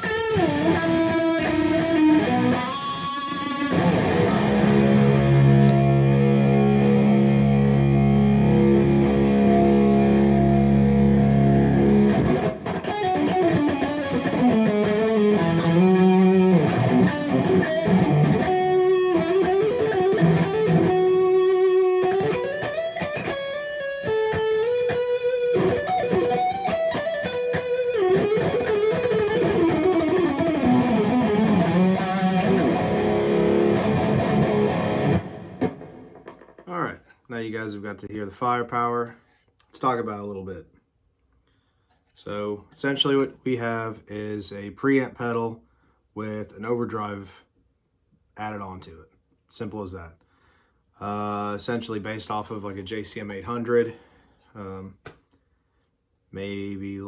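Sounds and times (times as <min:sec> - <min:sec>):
distorted electric guitar: 0:00.0 - 0:36.8.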